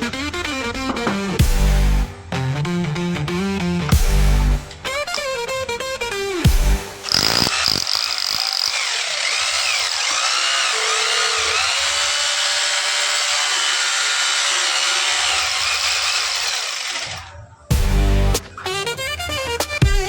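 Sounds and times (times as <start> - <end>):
wavering squeal: 7.0 - 9.0
rotary hammer drill grinding: 7.0 - 17.3.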